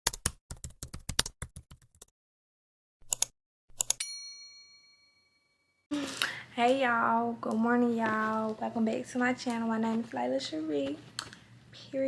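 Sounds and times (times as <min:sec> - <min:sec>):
bright bell ding: 0:04.0 - 0:05.5.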